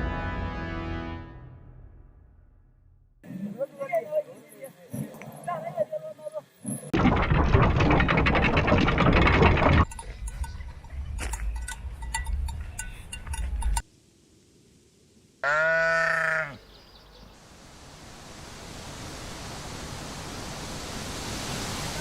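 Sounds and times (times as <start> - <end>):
scattered clicks: 7.0 - 13.8
loud animal call: 15.4 - 16.7.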